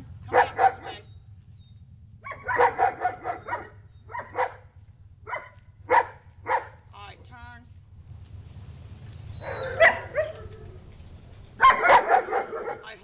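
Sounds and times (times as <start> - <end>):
dog barking: 0.3 - 1.0, 2.2 - 6.8, 9.4 - 10.6, 11.6 - 13.0.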